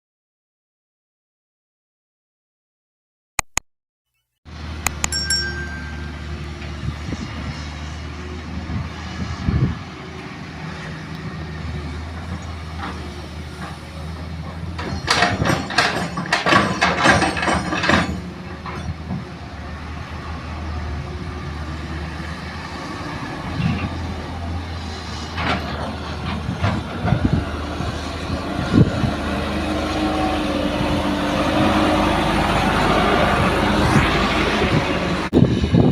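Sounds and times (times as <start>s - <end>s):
clicks: 3.4s - 3.6s, 4.8s - 5.8s
diesel excavator engine droning: 4.5s - 35.9s.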